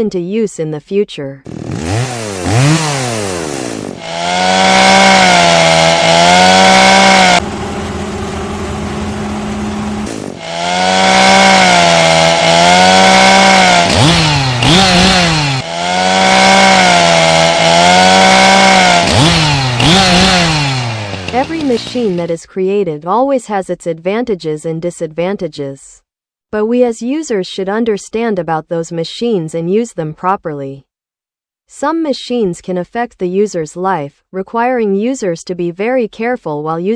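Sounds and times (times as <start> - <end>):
chainsaw revving: 1.4 - 22.3.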